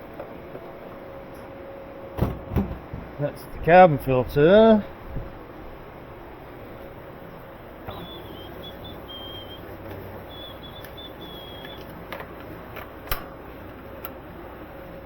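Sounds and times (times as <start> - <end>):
pumps humming: 2.2 - 15.0
sharp clicks: 7.9 - 13.3.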